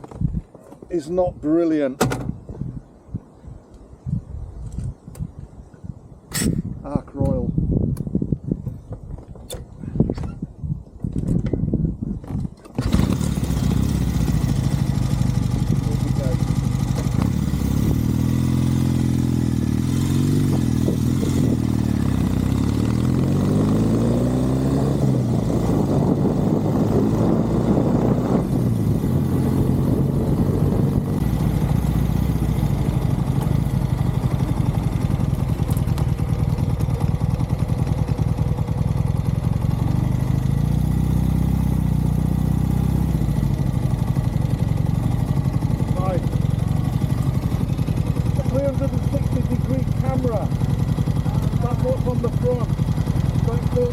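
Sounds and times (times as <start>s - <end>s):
motorcycle engine pulling away: 12.7s - 53.9s.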